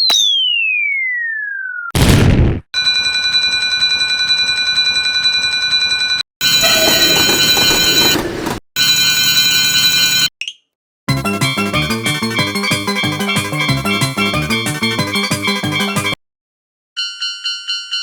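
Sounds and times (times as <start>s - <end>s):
whistle tone gliding down: 0.0s - 1.9s
electronic alarm-like ringing: 2.8s - 8.2s, 8.8s - 10.3s.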